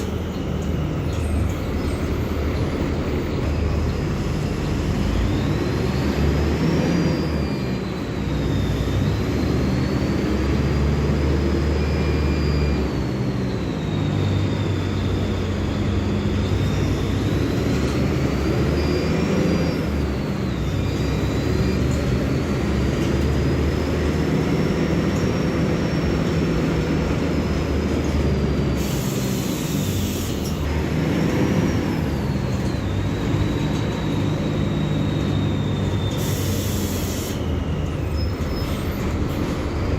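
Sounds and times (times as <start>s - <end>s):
bus engine rumbling: 0.0s - 39.9s
air hiss: 28.8s - 30.5s, 36.2s - 37.4s.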